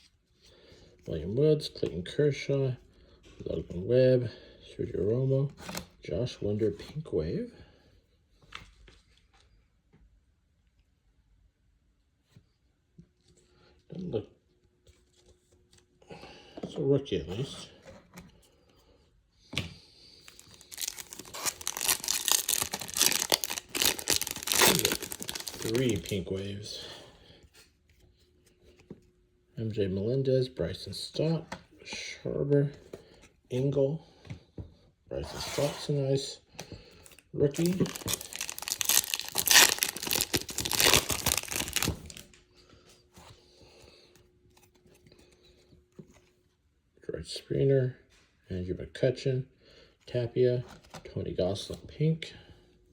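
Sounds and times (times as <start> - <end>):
wrapper crinkling and tearing: 20.3 - 26.4, 37.5 - 42.4.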